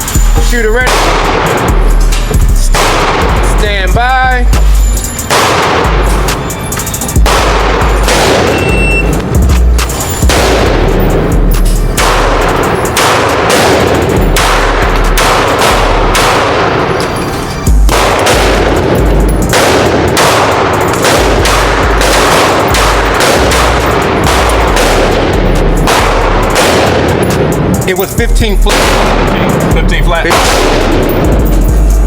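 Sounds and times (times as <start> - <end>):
handgun shots: 0.8 - 1.6, 2.8 - 3.4, 5.2 - 6.4, 7.2 - 17.2, 17.8 - 27.6, 28.7 - 31.7.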